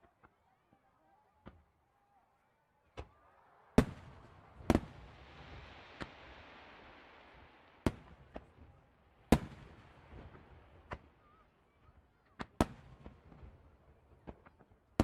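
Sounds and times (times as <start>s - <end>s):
fireworks bangs: 2.9s - 15.0s
firework hiss: 3.8s - 11.2s.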